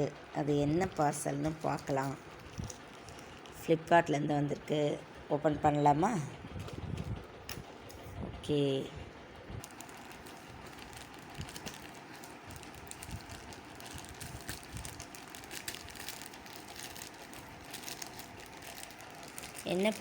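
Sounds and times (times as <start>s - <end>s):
packaging being opened by hand: 1.5s - 3.6s, 9.6s - 20.0s.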